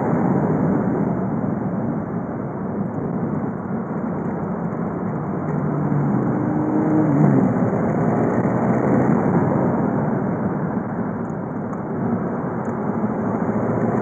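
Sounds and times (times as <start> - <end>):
road noise: 0.0 - 14.0.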